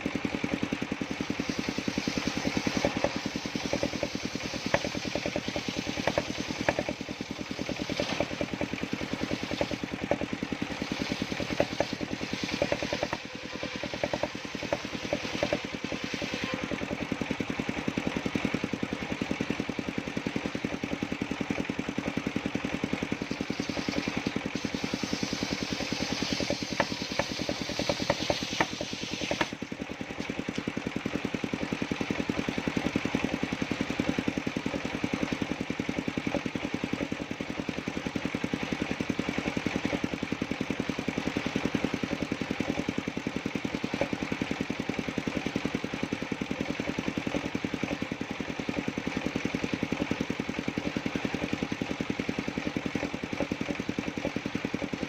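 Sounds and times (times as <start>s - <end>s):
saw rig engine running: 0.0s - 55.0s
bright hiss: 23.5s - 29.5s.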